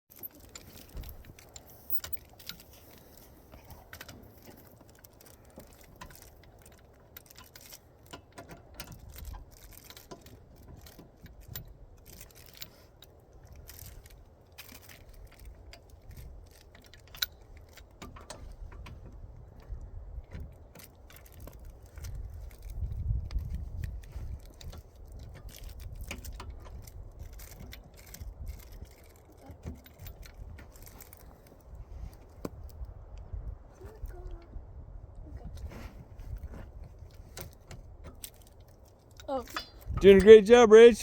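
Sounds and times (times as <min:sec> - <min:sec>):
metallic tool clinks and scrapes: 0:00.1 - 0:07.8.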